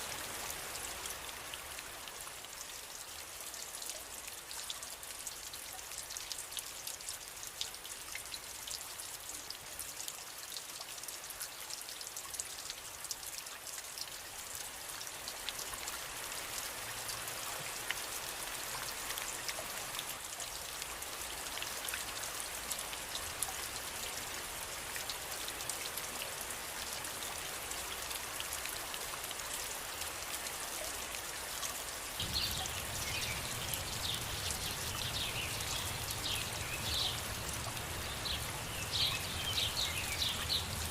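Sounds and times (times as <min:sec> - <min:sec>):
rain pattering: 0:00.0 - 0:40.9.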